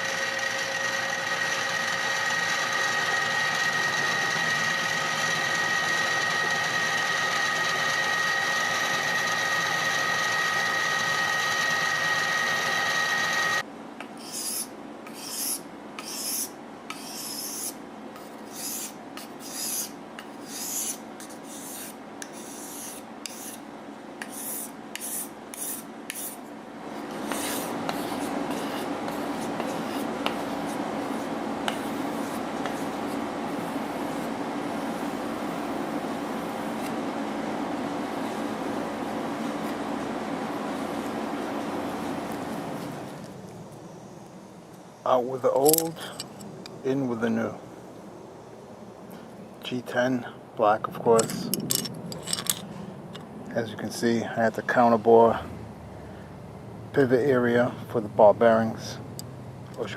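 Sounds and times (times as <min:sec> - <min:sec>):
power tool whining: 0:00.0 - 0:13.6
steady machine hum: 0:00.0 - 0:59.9
hand file rasping: 0:14.2 - 0:23.6.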